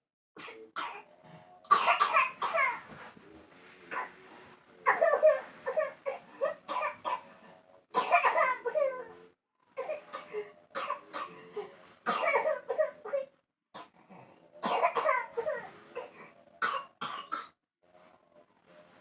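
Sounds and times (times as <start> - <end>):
young child coughing: 1.7 - 3.0, 8.0 - 9.0, 12.1 - 13.3, 14.6 - 17.6.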